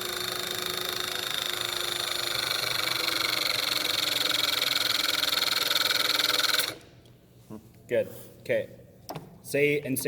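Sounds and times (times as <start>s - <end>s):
hydraulic crimping tool running: 0.0s - 7.1s.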